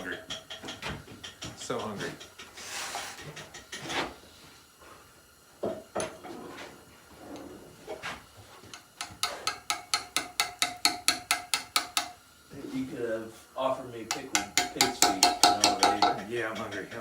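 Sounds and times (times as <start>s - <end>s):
hammer striking steel chisel on stone: 9.0s - 12.2s, 14.1s - 17.0s.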